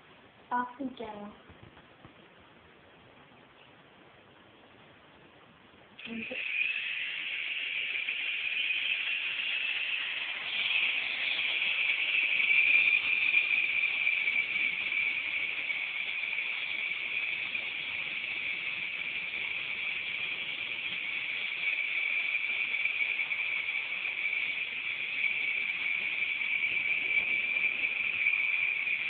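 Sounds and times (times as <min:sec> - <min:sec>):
toy helicopter motor buzzing: 0:06.0 - 0:29.0.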